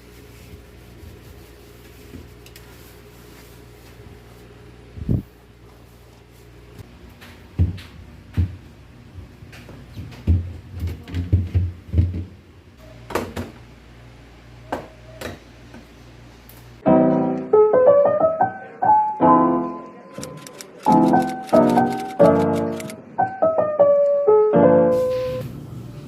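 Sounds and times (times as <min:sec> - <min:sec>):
piano music: 0:16.8 - 0:25.7.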